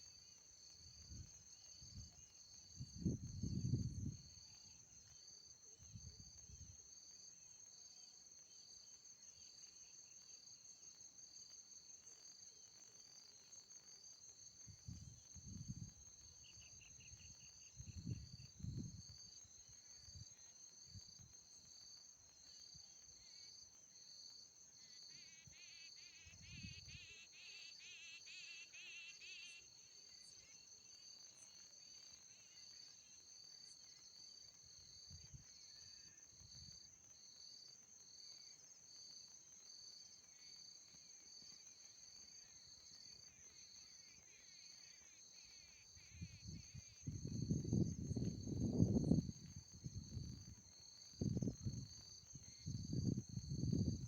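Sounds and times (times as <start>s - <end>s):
crickets chirping: 0.0s - 54.0s
lower insect trill: 0.0s - 54.0s.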